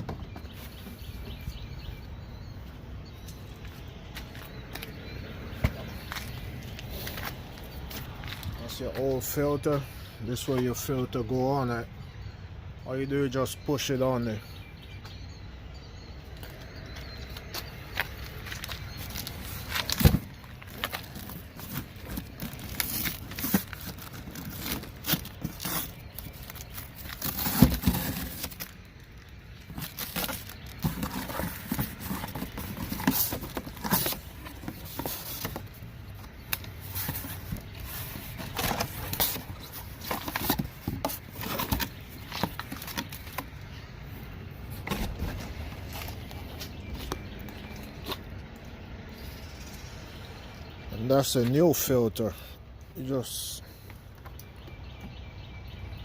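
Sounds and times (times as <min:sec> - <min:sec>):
scraping and crinkling: 0:17.3 - 0:48.5.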